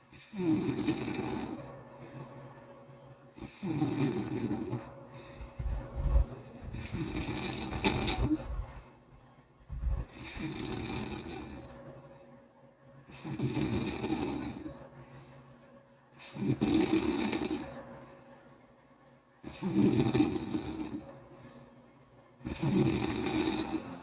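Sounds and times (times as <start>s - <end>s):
person snoring: 0.0s - 1.7s, 3.4s - 8.8s, 9.8s - 11.8s, 13.1s - 14.8s, 16.2s - 17.8s, 19.4s - 21.1s, 22.4s - 24.0s.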